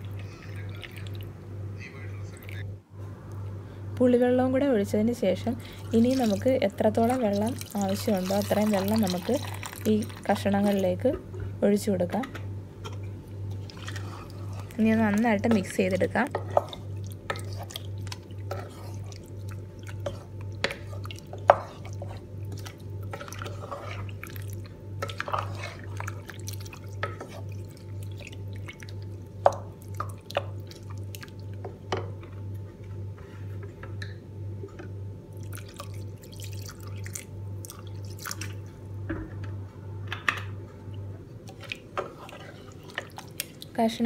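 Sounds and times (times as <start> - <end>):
spoon stirring in a pot: 12.1 - 32.4, 41.5 - 43.7.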